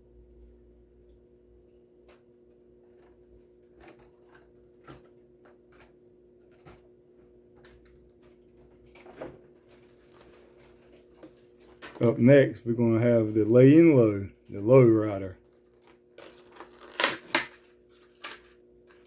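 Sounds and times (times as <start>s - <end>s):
steady low hum: 0.0s - 16.3s
plastic blister pack clicks and crackles: 15.8s - 19.0s.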